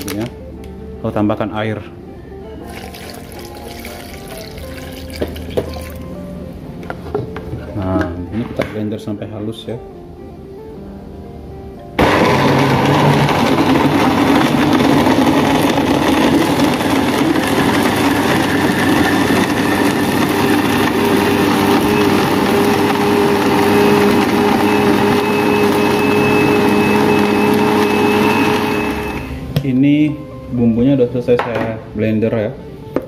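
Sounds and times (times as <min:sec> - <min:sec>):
blender grinding: 0:02.6 - 0:06.1, 0:12.0 - 0:29.5.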